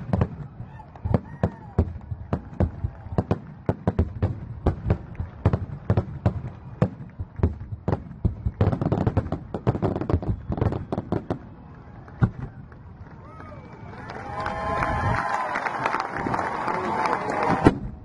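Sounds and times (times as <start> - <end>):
fireworks bangs and crackle: 0.0 - 13.8, 14.5 - 18.0.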